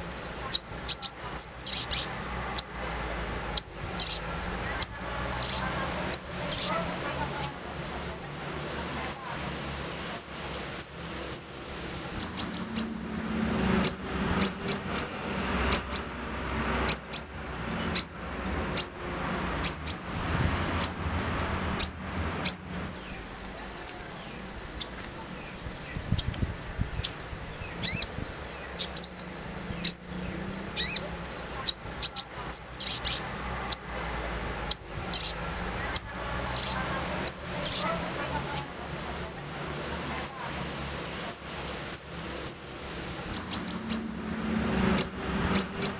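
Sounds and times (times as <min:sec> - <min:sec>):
bird calling with harsh chips: 0:00.5 - 0:02.8, 0:03.6 - 0:08.3, 0:10.2 - 0:13.0, 0:19.6 - 0:20.1, 0:20.8 - 0:21.1, 0:27.0 - 0:29.2, 0:30.8 - 0:31.1, 0:31.7 - 0:34.0, 0:34.7 - 0:38.0, 0:41.3 - 0:44.2.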